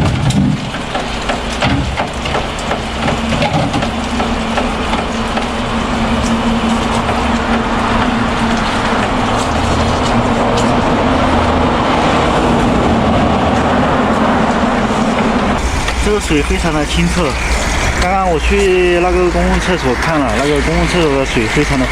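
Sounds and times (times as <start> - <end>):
knocks and clatters: 0.0 - 11.5
water rushing from pipe: 0.0 - 21.9.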